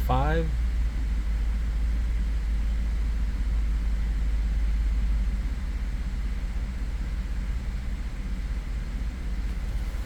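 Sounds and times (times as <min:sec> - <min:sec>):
truck engine idling: 0:00.0 - 0:00.6.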